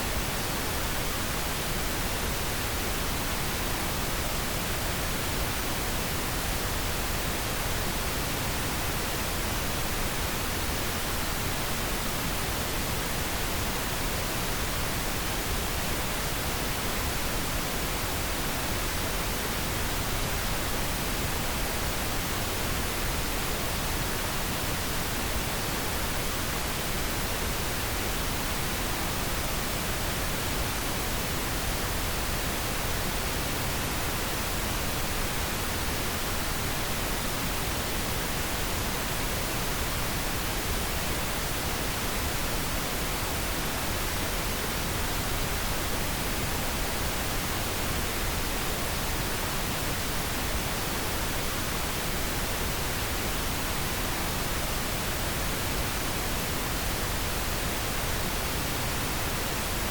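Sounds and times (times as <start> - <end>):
pink noise hiss: 0.0 - 59.9.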